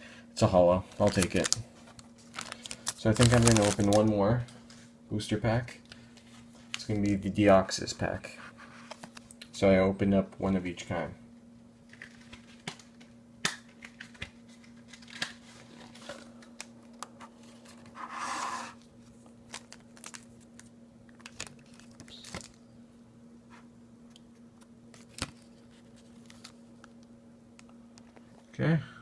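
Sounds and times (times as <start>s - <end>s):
faint steady hum: 0.0s - 29.0s
foil pack crinkling: 0.9s - 4.5s, 13.7s - 17.8s, 19.1s - 22.6s.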